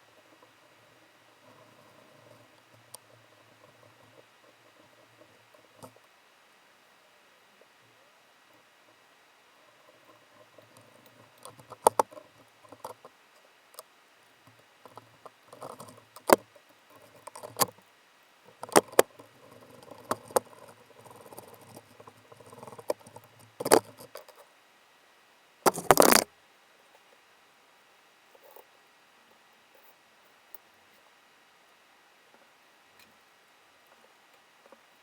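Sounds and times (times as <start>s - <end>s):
handling noise: 25.7s - 26.3s.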